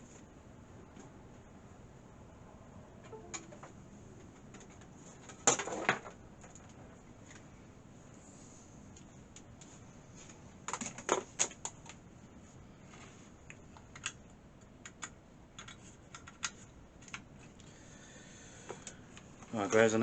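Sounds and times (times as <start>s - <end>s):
keyboard and mouse clicks: 14.8s - 17.3s.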